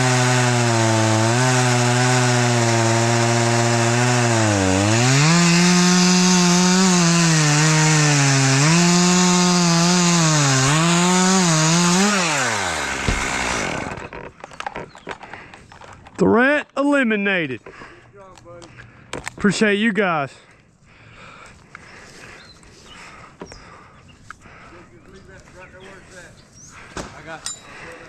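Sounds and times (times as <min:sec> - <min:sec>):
chainsaw cutting wood: 0:00.0 - 0:15.8.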